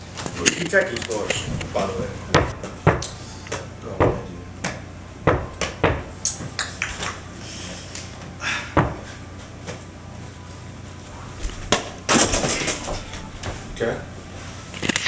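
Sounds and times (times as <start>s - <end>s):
mini basketball bouncing and thudding: 4.0s - 6.1s, 8.8s - 9.1s.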